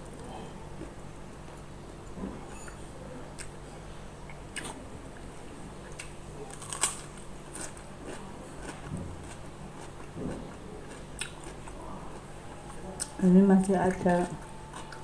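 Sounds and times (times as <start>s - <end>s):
faint steady hum: 0.0s - 15.0s
person chewing and biting food: 4.3s - 13.2s
sharp clicks and small crunches: 5.9s - 11.6s.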